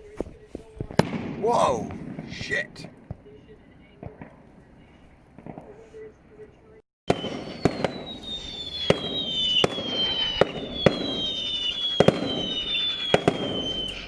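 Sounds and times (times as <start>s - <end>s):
fireworks bangs: 0.5s - 14.0s
falling firework whistles: 7.1s - 14.0s.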